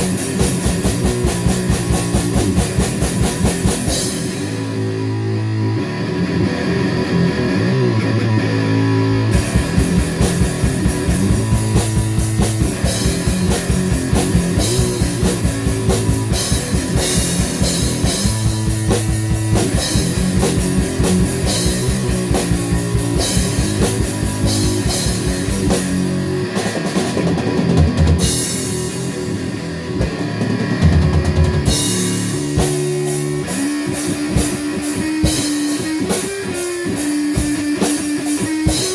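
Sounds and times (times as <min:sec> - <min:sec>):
fast kick drum beat: 0:00.0 - 0:04.3, 0:09.4 - 0:28.7
rock band playing: 0:00.0 - 0:38.9.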